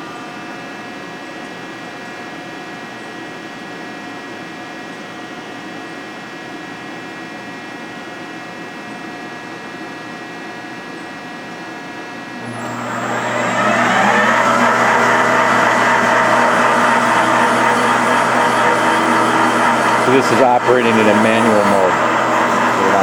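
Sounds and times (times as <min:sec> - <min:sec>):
lathe mechanical whine: 0:12.3 - 0:23.0
deep hum: 0:12.4 - 0:20.4.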